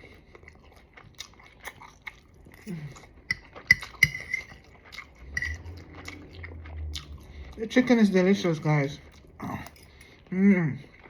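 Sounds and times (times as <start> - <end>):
chewing: 0.0 - 11.0
cutlery clinking on a plate: 3.3 - 4.6.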